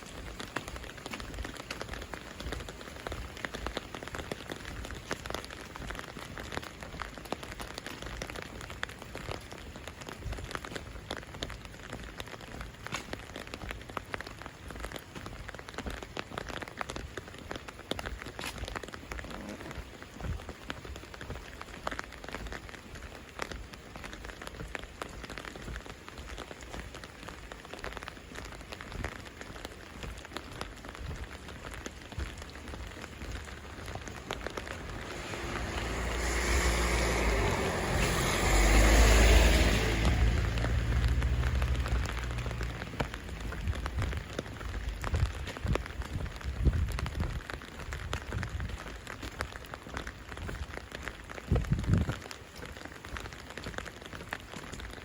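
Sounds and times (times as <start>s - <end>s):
rain pattering: 0.0s - 55.0s
rushing noise with low rumble: 0.0s - 55.0s.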